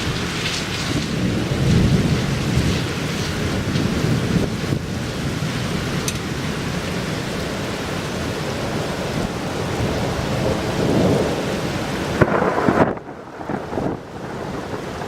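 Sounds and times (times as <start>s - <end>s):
sharp thunder crack: 0.0s - 4.9s, 12.1s - 15.0s
rumbling thunder: 0.0s - 6.7s, 8.8s - 15.0s
heavy rain: 0.0s - 15.0s.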